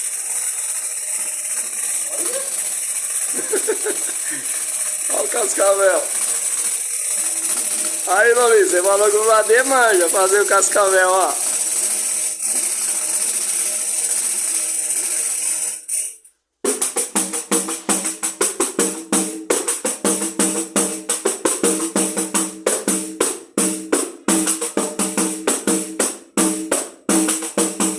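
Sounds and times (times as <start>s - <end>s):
tambourine rattling: 0.0s - 27.9s
tambourine struck in rhythm: 0.0s - 27.9s.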